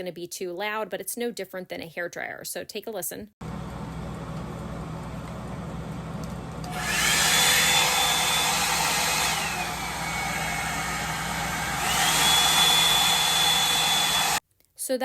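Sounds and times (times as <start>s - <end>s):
hot-air brush motor whine: 3.4s - 14.4s.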